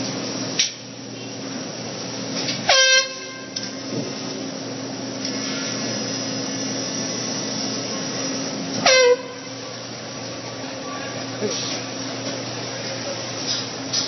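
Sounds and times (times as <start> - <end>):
steady background hum: 0.0 - 14.0
air horn blast: 2.6 - 3.8, 8.8 - 9.5.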